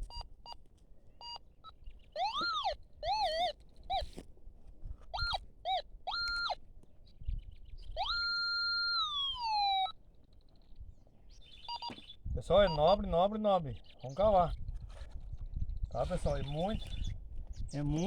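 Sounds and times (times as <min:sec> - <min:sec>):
metal detector beeps and tones: 0:00.0 - 0:00.6, 0:01.2 - 0:04.2, 0:05.1 - 0:06.6, 0:07.9 - 0:10.0, 0:11.6 - 0:13.2.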